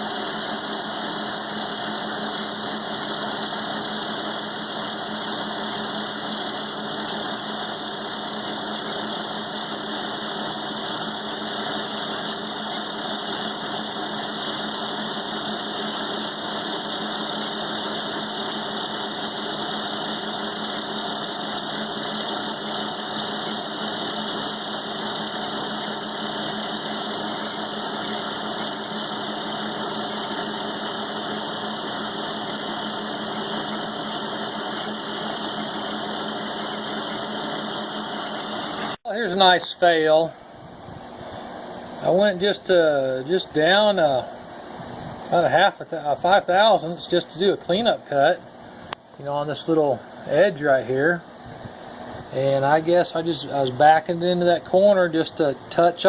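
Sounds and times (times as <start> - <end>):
end mill cutting steel: 0.0 - 40.2
milling machine motor hum: 0.0 - 45.4.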